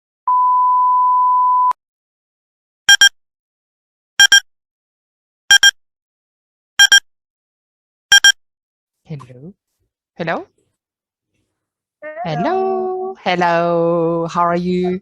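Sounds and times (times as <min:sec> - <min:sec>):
steady electronic beep tone: 0:02.9 - 0:03.1, 0:04.2 - 0:04.4, 0:05.5 - 0:05.8, 0:06.8 - 0:07.0, 0:08.1 - 0:08.4
short double beeps: 0:02.9 - 0:03.2, 0:04.2 - 0:04.5, 0:05.5 - 0:05.8, 0:06.8 - 0:07.0, 0:08.1 - 0:08.4.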